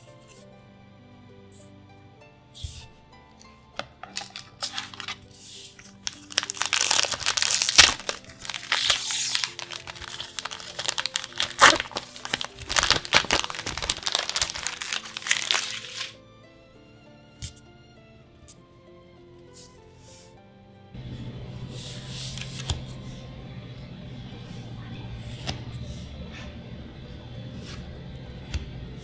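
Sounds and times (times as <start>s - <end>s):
soft background music: 0.0s - 29.0s
foil wrapper crinkling: 4.0s - 16.2s.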